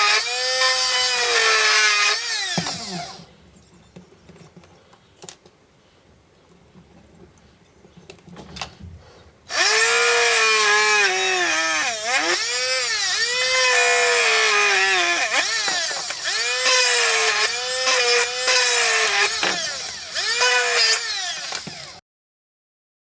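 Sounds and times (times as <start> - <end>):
electric drill whining: 0.0 - 3.3, 9.5 - 22.0.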